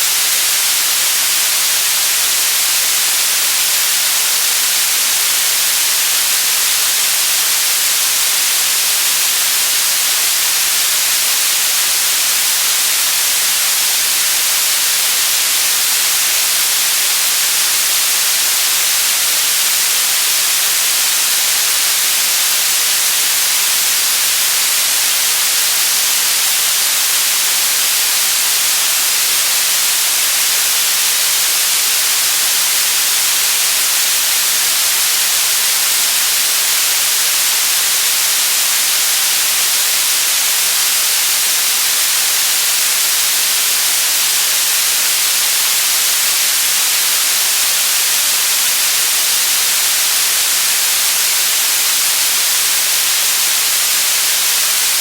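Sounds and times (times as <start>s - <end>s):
white noise hiss: 0.0s - 55.0s.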